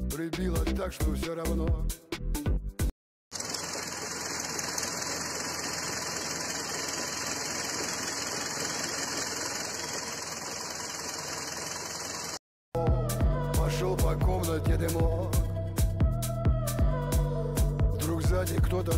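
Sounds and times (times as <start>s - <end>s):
car engine idling: 3.4s - 12.4s.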